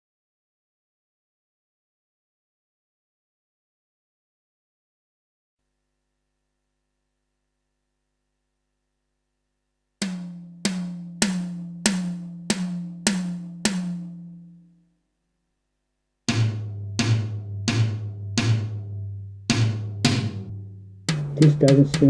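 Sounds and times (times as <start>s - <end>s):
electronic drum hits: 10.0s - 14.6s, 16.3s - 22.0s.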